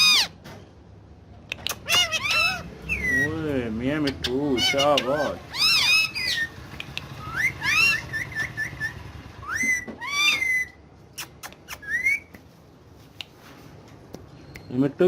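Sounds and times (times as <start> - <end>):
parrot whistling and chirping: 0.0 - 0.4, 1.6 - 12.6
sharp clicks: 6.7 - 7.2.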